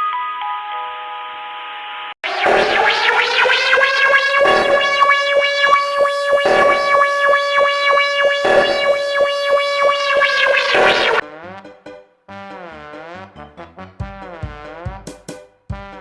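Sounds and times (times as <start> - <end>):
synthesized siren tone: 2.2 - 11.2.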